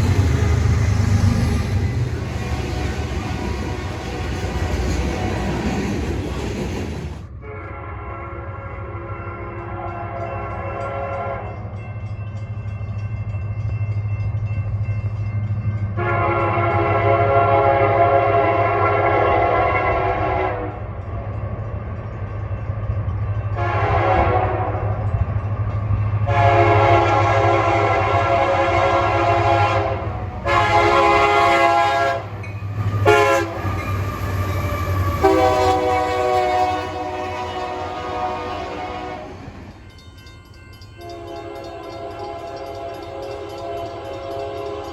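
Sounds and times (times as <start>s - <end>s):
low rumble of train: 0.0s - 44.9s
locomotive air horn blasts: 7.4s - 11.6s, 16.0s - 20.8s, 23.6s - 24.9s, 26.2s - 32.4s, 33.0s - 33.8s, 35.0s - 39.4s, 41.0s - 44.9s.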